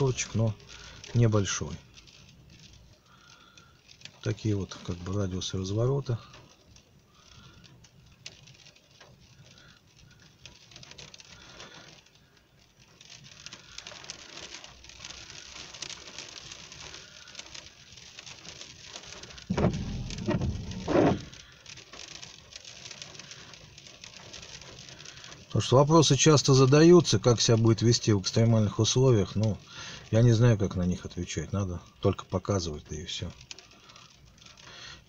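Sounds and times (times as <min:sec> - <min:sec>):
rain pattering: 0:00.0 - 0:35.0
loud low bursts: 0:19.5 - 0:21.3.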